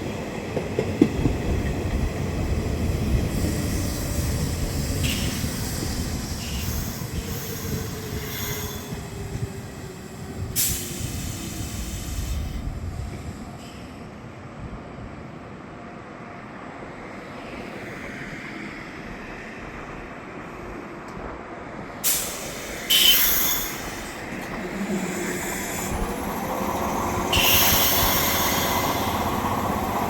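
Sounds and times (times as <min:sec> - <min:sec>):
electric train rumbling past: 0:00.0 - 0:30.0
high wheel squeals: 0:22.9 - 0:24.2, 0:27.2 - 0:29.3.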